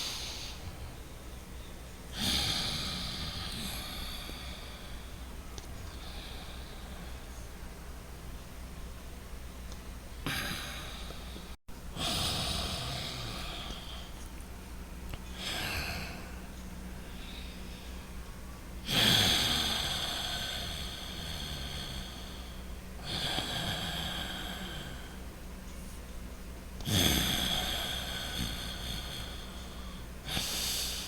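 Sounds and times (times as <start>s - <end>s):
breathing through the nose: 0.0s - 0.7s.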